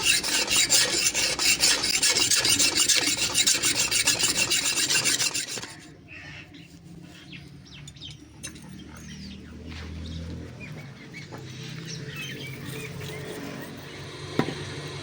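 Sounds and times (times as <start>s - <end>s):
hand tool rasping on metal: 0.0s - 6.0s.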